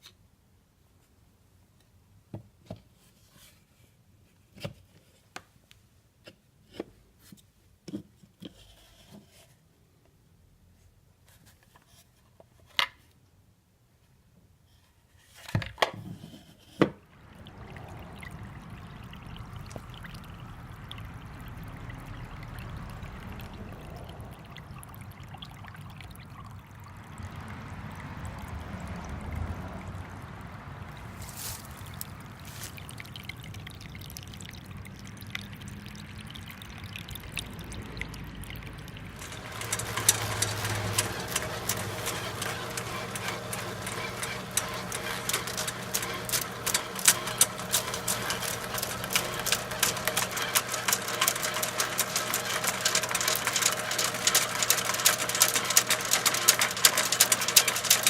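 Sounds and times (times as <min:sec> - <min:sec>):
water pouring and trickling: 0:17.0 - 0:58.0.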